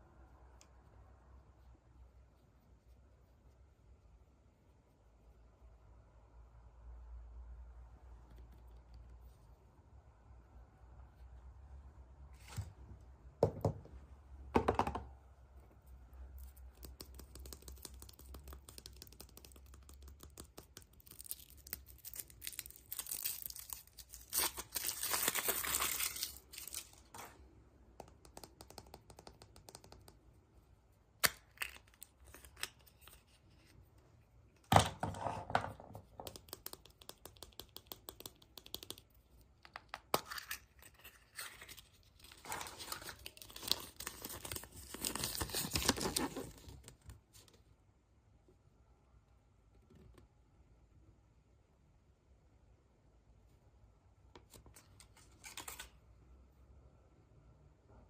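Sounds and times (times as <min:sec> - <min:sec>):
small clicks and taps: 0:16.4 - 0:21.0
wrapping tearing and crinkling: 0:21.0 - 0:27.1, 0:40.3 - 0:46.8.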